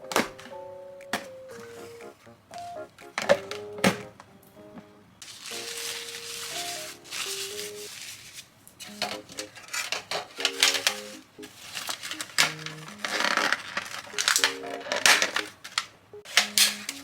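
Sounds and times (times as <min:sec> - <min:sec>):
bouncy background music: 0:00.0 - 0:07.9, 0:08.9 - 0:09.6, 0:10.3 - 0:15.6, 0:16.2 - 0:17.0
plastic packaging crinkling: 0:05.2 - 0:17.0.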